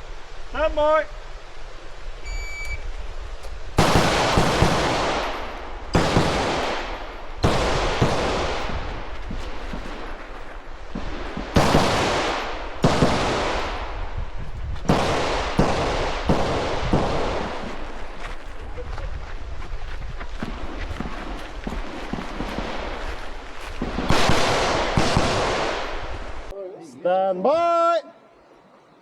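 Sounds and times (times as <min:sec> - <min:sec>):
shot timer beep: 0:02.3 - 0:02.8
rifle shots with echo: 0:03.8 - 0:09.1, 0:11.0 - 0:14.0, 0:14.9 - 0:18.0, 0:23.8 - 0:26.4.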